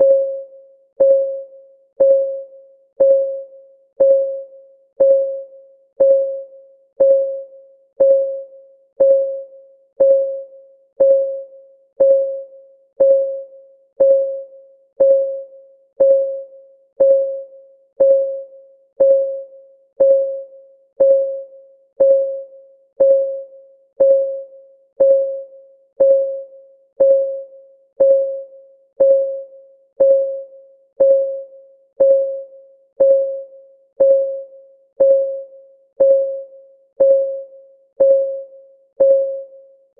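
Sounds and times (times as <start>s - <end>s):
synthesized clock ticking: 8.0s - 10.4s, 12.0s - 15.4s, 18.0s - 22.4s, 32.0s - 32.4s, 33.0s - 39.5s.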